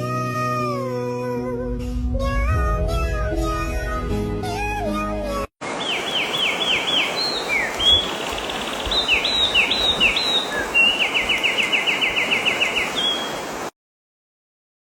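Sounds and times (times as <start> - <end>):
bird trill: 5.8 - 13.4
bird whistling falling notes: 5.8 - 13.4.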